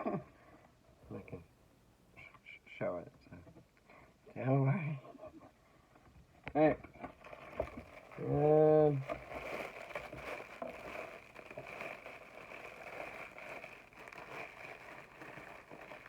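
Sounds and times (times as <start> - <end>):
packaging rustling and crinkling: 7.1 - 16.0.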